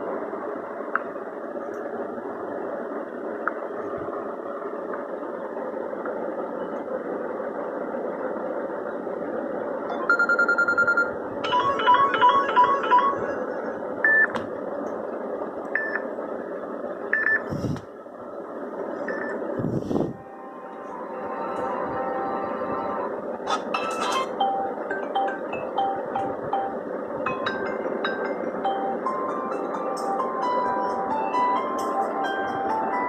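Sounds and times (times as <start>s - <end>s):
phone speaker electronic tones: 9.9s - 13.5s.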